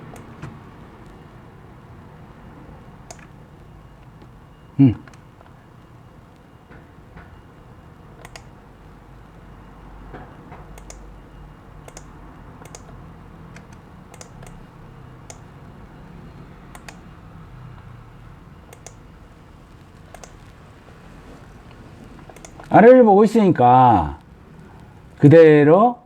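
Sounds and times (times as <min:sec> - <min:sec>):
low steady hum: 0:00.0 - 0:26.0
mouse and keyboard clicks: 0:03.1 - 0:03.3, 0:08.2 - 0:08.5, 0:10.8 - 0:11.1, 0:11.9 - 0:14.6, 0:16.7 - 0:17.0, 0:20.1 - 0:20.6, 0:22.1 - 0:22.7.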